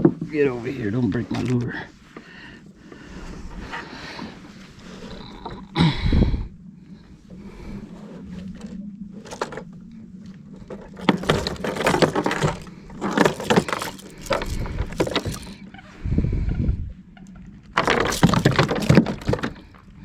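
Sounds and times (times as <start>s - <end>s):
fishing gear rattling and clattering: 8.4s - 9.8s, 10.4s - 15.8s, 17.6s - 19.9s
short low rumble: 15.7s - 17.2s.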